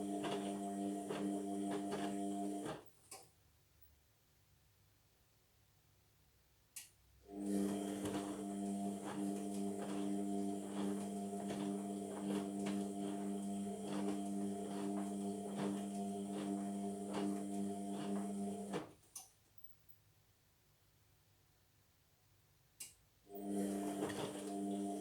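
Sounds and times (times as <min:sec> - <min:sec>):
washing machine humming: 0:00.0 - 0:02.8, 0:07.3 - 0:18.9, 0:23.3 - 0:25.0.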